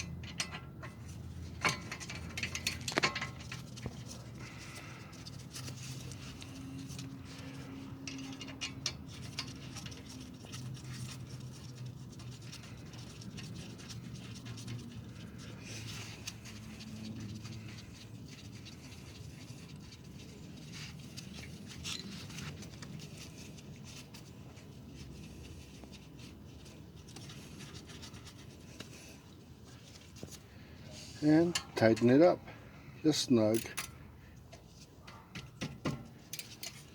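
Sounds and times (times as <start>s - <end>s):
wrench scraping on bolts: 35.4s - 36.9s.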